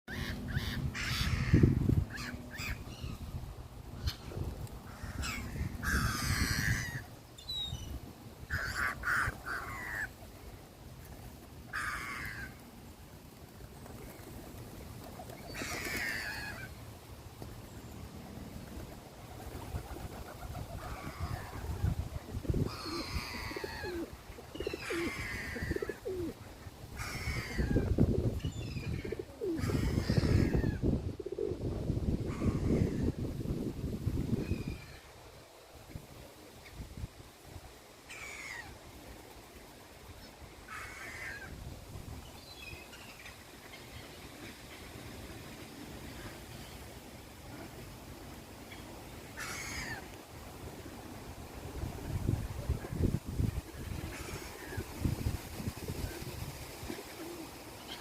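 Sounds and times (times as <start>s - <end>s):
cooing-like bird notes: 19.5s - 28.0s, 28.8s - 31.7s, 55.9s - 58.0s.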